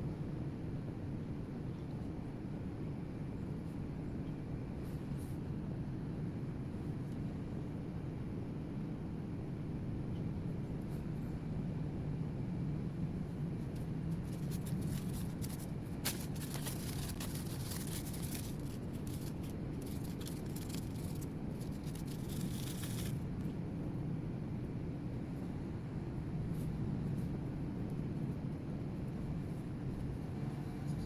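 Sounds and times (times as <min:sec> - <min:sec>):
clicks and scraping on laptop: 0:14.3 - 0:23.2.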